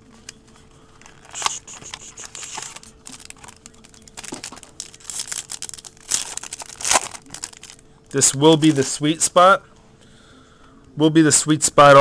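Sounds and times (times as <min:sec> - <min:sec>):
wrapper crinkling and tearing: 0:01.0 - 0:07.8.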